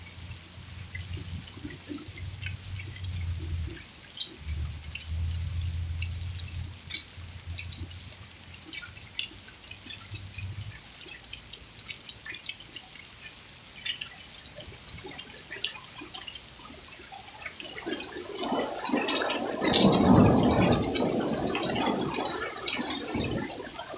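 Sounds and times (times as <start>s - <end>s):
water dripping: 0.0s - 23.9s
hail ticking: 14.8s - 23.9s.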